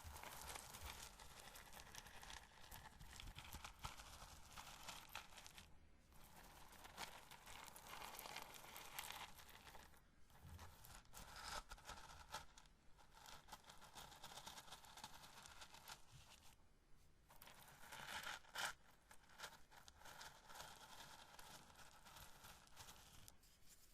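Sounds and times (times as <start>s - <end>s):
corn kernels crackling and rustling: 0.0s - 10.0s.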